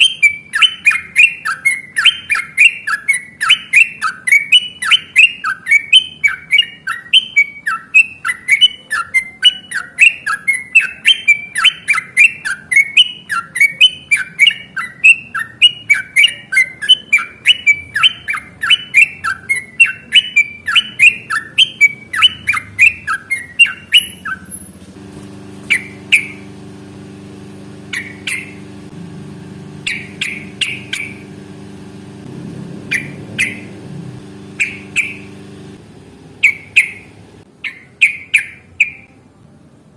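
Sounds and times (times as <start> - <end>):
bird song bubbly notes: 0.0 - 24.6, 25.6 - 32.1, 32.8 - 35.8, 36.4 - 39.1
low steady hum: 24.8 - 37.5
single bird calls: 25.6 - 26.5, 27.9 - 28.7, 29.8 - 31.4, 32.9 - 33.8, 34.5 - 35.4, 36.4 - 39.1.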